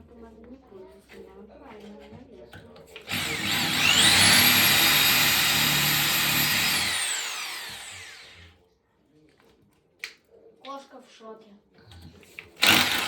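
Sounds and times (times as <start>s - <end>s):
electric drill motor whine: 3.1s - 8.5s, 12.6s - 13.0s.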